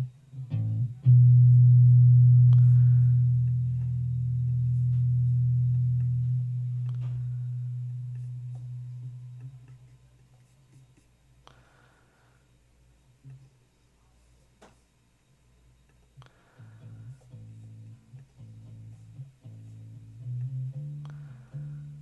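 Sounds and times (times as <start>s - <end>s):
bass guitar notes: 0.0s - 9.9s, 16.6s - 22.0s.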